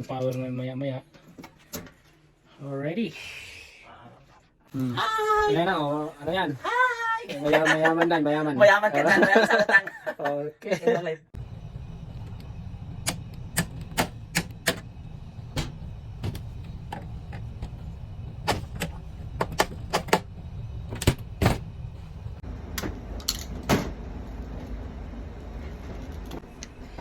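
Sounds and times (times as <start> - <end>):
steady low rumble: 11.4 - 27.0
sharp clicks and knocks: 12.3 - 14.9.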